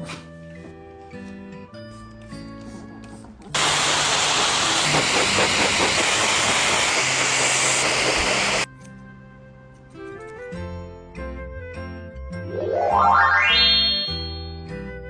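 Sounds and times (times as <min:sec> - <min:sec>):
shower spraying water: 0:03.6 - 0:08.7
faint background music: 0:08.7 - 0:13.1.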